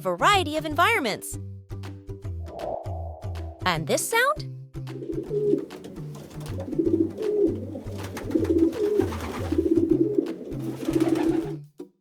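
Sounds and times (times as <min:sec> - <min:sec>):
pigeon cooing: 0:04.9 - 0:11.6.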